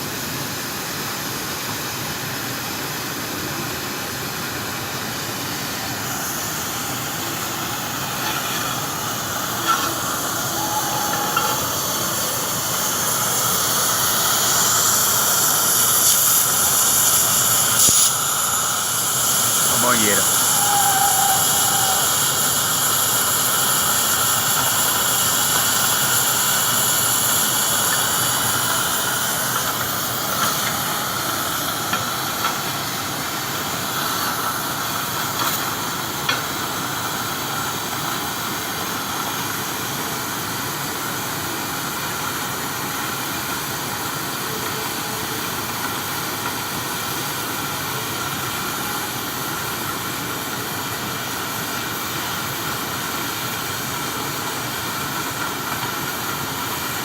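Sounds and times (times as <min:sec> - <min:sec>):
cutting torch hissing: 0:04.2 - 0:39.6.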